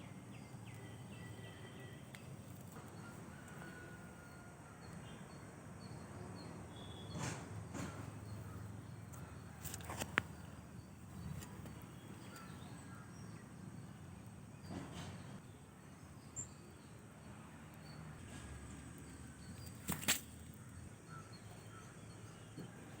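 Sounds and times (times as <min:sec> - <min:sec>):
rustling: 0:19.4 - 0:20.6.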